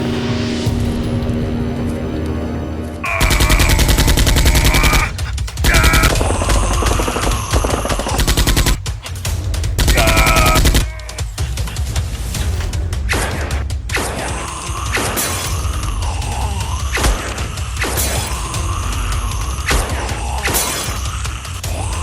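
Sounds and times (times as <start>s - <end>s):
background music: 0.0s - 22.0s
automatic gunfire bursts: 3.2s - 8.8s, 9.8s - 10.8s.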